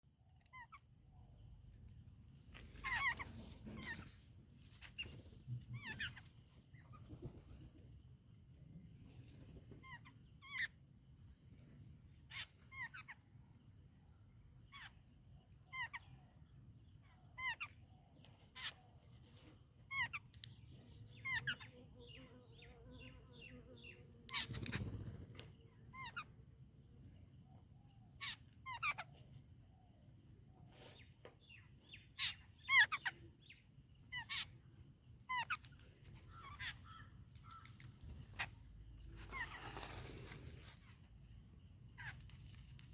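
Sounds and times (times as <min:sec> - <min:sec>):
wild birds calling: 0:02.6 - 0:04.3, 0:21.1 - 0:26.3, 0:31.0 - 0:40.7.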